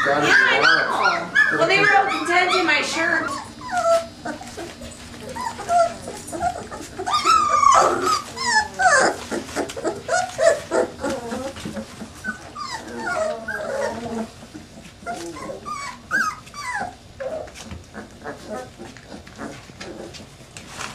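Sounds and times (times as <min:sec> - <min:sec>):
puppies whimpering and whining: 0:00.0 - 0:20.9.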